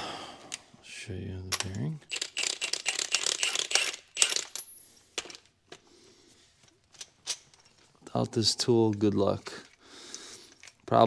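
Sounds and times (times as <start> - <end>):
metal tool parts clinking: 1.5 - 5.5, 6.8 - 7.7.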